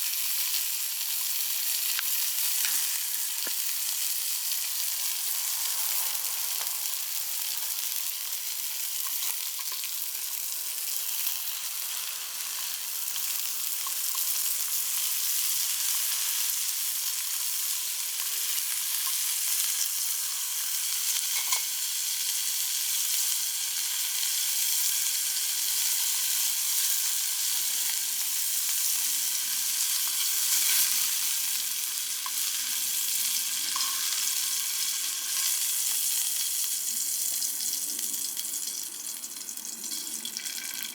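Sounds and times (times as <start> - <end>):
meat sizzling over campfire: 0.0 - 40.9
small fire pops: 1.9 - 4.0.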